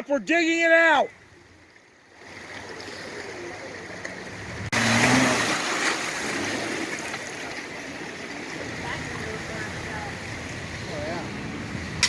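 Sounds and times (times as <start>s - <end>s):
flowing river water: 0.0s - 12.0s.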